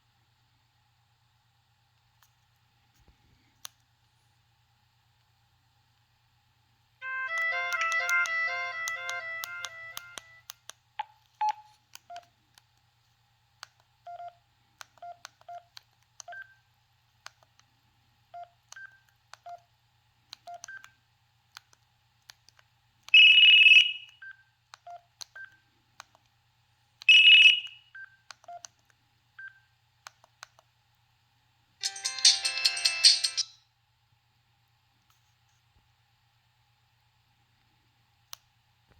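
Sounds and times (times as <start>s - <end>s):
phone ringtone melody: 7.0s - 10.4s, 31.8s - 33.5s
loud phone tones: 7.0s - 10.5s
button clicks: 7.2s - 11.7s.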